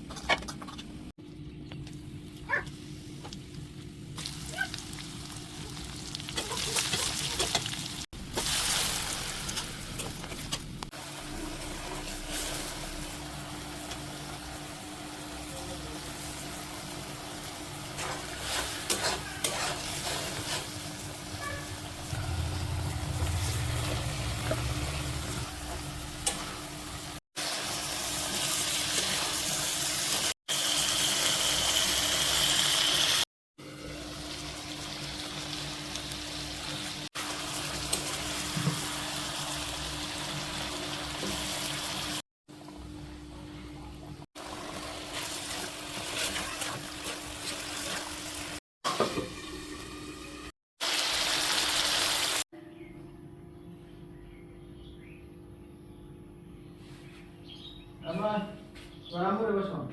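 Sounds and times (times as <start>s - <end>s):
chicken sizzling in a pan: 11.1s - 42.2s, 44.4s - 52.4s
stirring scrape and clatter: 18.0s - 21.6s, 45.1s - 48.2s.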